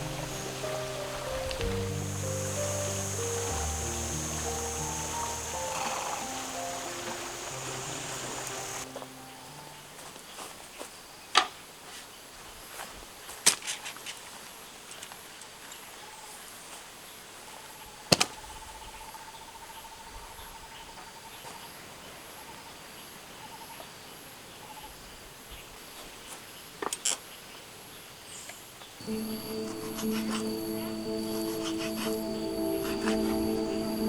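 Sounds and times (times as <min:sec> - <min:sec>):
lower rapid insect trill: 0:00.0 - 0:09.6, 0:29.0 - 0:34.0
insects chirping: 0:00.0 - 0:10.0, 0:29.0 - 0:34.0.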